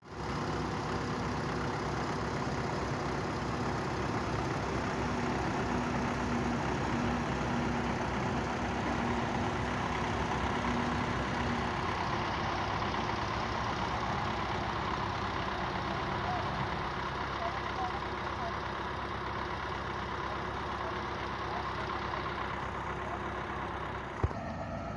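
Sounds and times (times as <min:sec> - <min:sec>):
heavy diesel engine running: 0:00.0 - 0:24.9.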